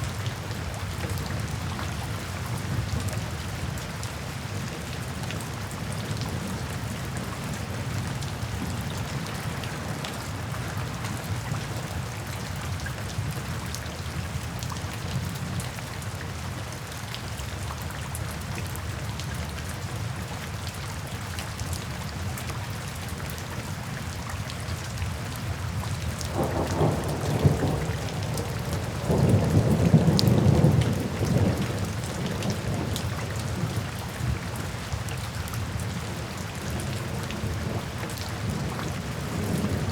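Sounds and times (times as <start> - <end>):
heavy rain: 0.0 - 39.9
low rolls of thunder: 26.3 - 33.9, 36.7 - 39.9.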